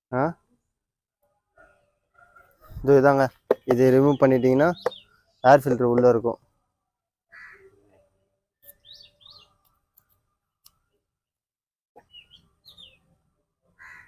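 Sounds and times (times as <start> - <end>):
small birds chirping: 1.6 - 6.6, 7.3 - 11.0, 12.0 - 13.2.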